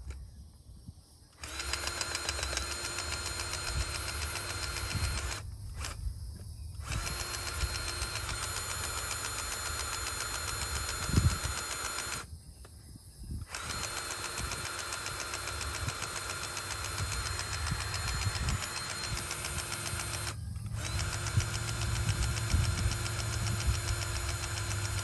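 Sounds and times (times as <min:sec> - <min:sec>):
skid steer engine running: 0:01.4 - 0:06.0, 0:06.8 - 0:12.3, 0:13.5 - 0:25.0.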